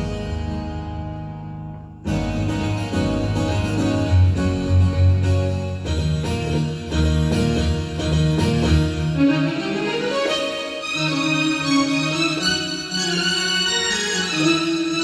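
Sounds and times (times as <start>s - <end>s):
bass notes: 0.0s - 9.2s
plucked-string keyboard tone: 0.0s - 13.0s.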